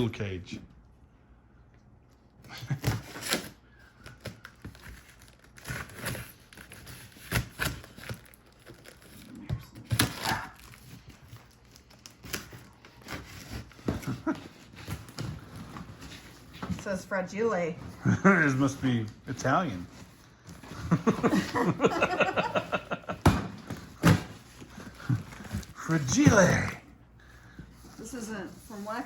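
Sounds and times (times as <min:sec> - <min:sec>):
cardboard crinkling and tearing: 0:02.7 - 0:16.6.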